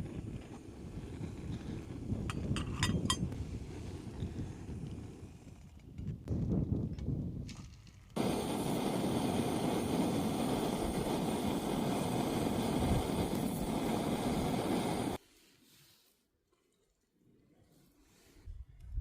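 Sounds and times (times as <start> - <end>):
gas stove burner hissing: 8.2 - 15.2.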